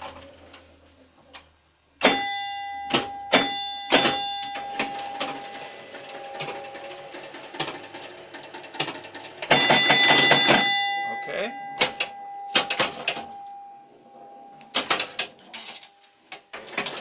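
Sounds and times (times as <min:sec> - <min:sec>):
pinball mechanical clacks: 0:02.0 - 0:10.9, 0:11.8 - 0:13.3, 0:14.7 - 0:15.9, 0:16.5 - 0:17.0
pinball scoring chime: 0:02.0 - 0:16.0, 0:16.6 - 0:17.0.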